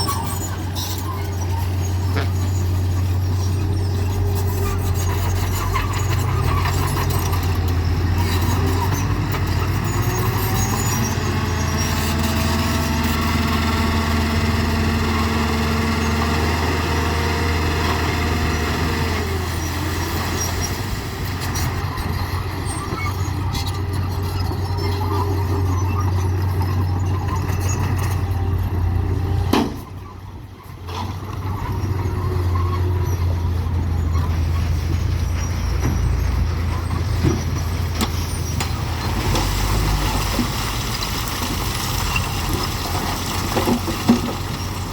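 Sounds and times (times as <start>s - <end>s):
heavy machinery engine drone: 0.0s - 44.9s.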